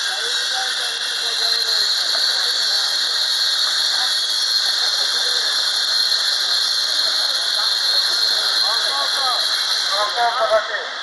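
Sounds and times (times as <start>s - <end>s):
loud hiss with high squeal: 0.0s - 11.0s.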